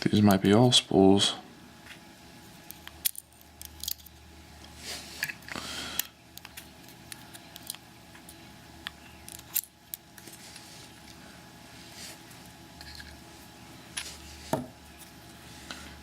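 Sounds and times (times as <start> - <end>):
lock pins clicking and rattling: 2.7 - 4.2, 9.2 - 10.0.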